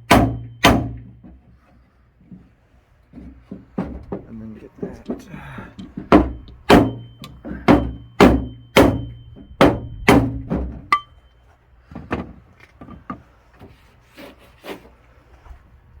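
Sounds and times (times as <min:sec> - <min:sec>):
hammer knocking on wooden block: 0:00.1 - 0:01.1, 0:03.5 - 0:04.3, 0:05.8 - 0:11.1.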